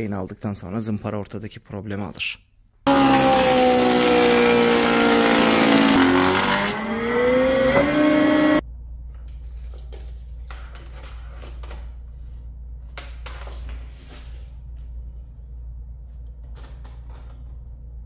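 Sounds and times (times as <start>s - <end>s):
planer motor whining: 2.9s - 8.6s
low steady hum: 11.1s - 18.0s.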